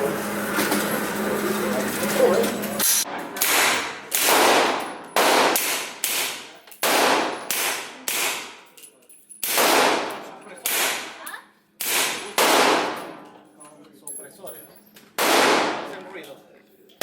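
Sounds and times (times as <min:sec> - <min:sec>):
gunshots with reverberant tail: 0:03.4 - 0:08.6, 0:09.5 - 0:11.1, 0:11.8 - 0:13.2, 0:15.2 - 0:15.9.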